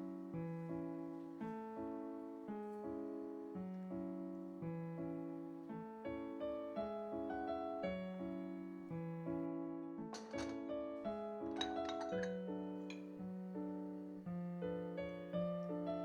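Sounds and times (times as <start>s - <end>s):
gentle piano music: 0.0s - 16.0s.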